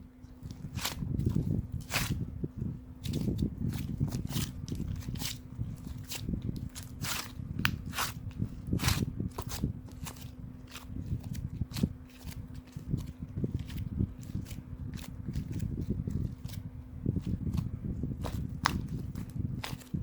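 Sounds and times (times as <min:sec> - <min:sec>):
faint hum: 0:00.0 - 0:20.0.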